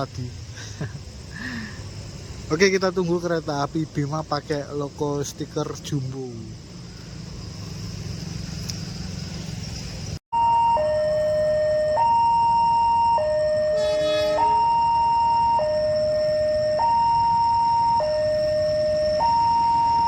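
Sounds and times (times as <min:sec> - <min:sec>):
high insect hum: 0:00.0 - 0:20.0
two-tone electronic warning siren: 0:10.3 - 0:20.0.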